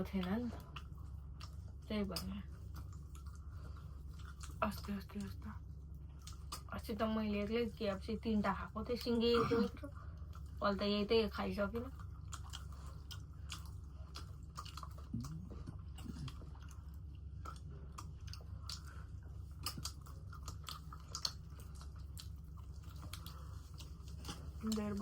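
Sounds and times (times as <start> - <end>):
chewing and crunching: 0.0 - 25.0
steady low hum: 0.0 - 25.0
wet mouth clicks: 12.3 - 16.5.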